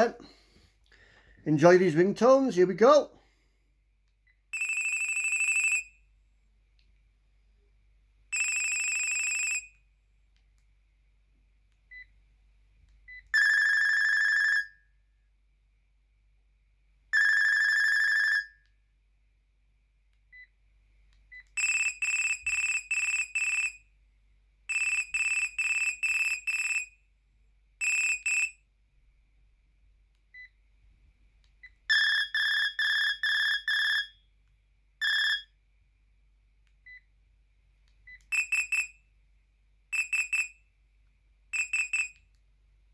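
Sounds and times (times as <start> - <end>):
phone ringtone beep tunes: 13.4 - 14.8, 31.9 - 34.2, 35.0 - 35.5, 38.3 - 38.9, 41.6 - 42.2.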